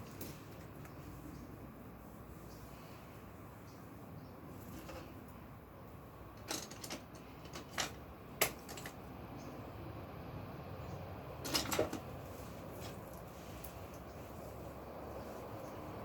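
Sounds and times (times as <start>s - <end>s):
sharp clicks and knocks: 6.4s - 9.0s.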